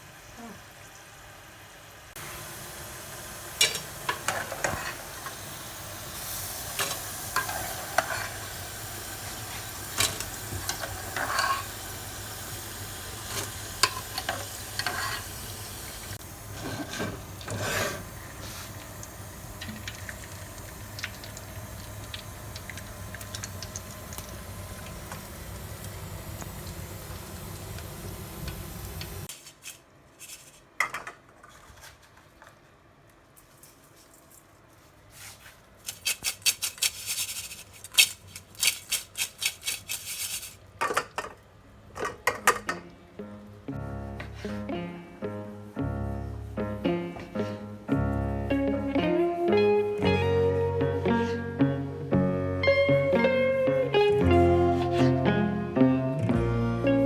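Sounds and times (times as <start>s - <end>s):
food sizzling in frying pan: 0.2s - 29.3s
utensil scraping pan: 7.4s - 8.4s, 10.7s - 11.7s, 13.4s - 15.3s, 16.5s - 18.1s.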